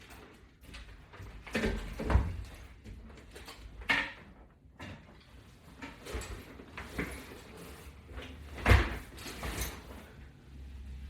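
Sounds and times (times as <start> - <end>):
handling knocks and rustles: 0.0 - 10.2.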